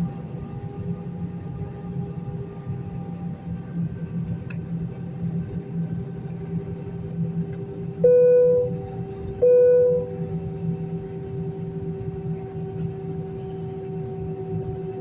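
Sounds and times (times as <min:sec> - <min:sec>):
steady droning hum: 0:07.9 - 0:15.0.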